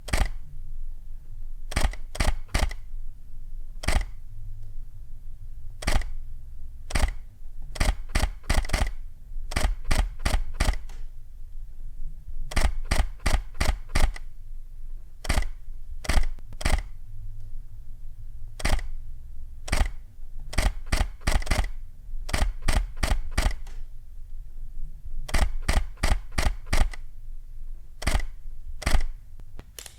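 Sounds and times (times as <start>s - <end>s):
camera shutter clicking: 0.1s - 0.4s, 1.7s - 2.8s, 3.8s - 4.2s, 5.8s - 6.1s, 6.9s - 7.2s, 7.8s - 11.0s, 12.5s - 14.3s, 15.2s - 17.0s, 18.6s - 18.9s, 19.7s - 23.9s, 25.3s - 27.0s, 28.0s - 29.2s.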